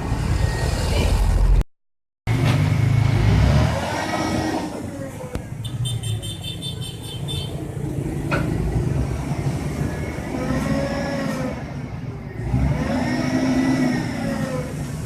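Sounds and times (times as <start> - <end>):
engine revving: 2.3 - 5.0, 8.7 - 15.0.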